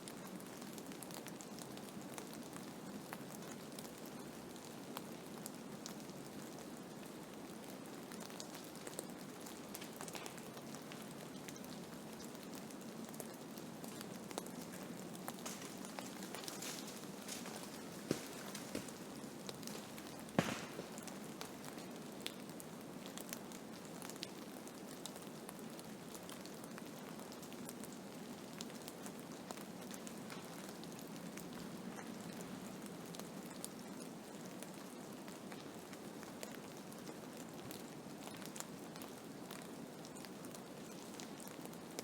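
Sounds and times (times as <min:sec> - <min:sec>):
snow ticking against a surface: 0:13.8 - 0:22.4.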